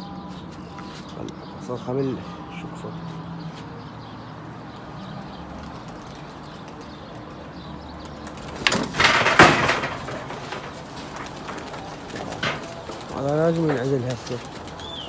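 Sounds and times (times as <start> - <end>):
clatter and rustle: 5.6 - 15.0.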